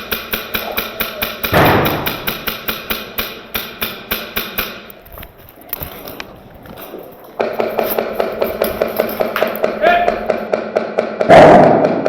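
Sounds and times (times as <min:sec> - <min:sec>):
airsoft gun firing rapidly: 0:00.0 - 0:04.9, 0:07.4 - 0:12.0
loud burst of noise: 0:07.4 - 0:12.0.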